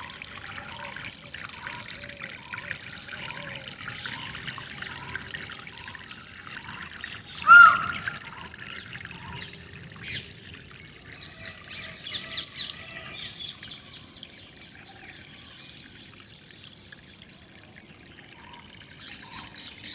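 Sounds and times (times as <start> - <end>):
water trickling: 0.0 - 19.9.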